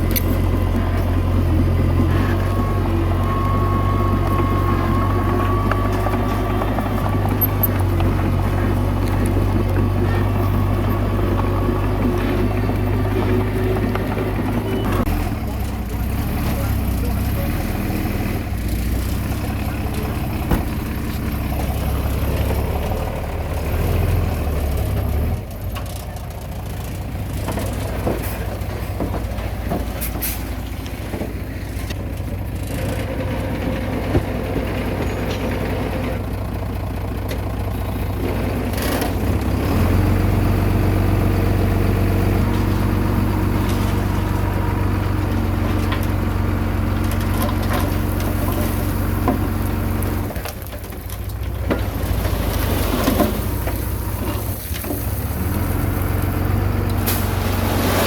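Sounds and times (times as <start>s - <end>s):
heavy diesel engine running: 0.0s - 58.0s
knocks and clanks: 33.9s - 36.1s.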